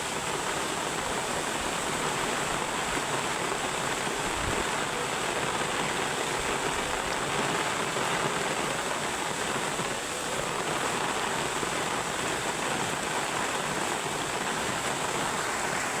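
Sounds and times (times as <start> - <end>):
heavy rain: 0.0 - 16.0
river water rushing: 0.0 - 16.0.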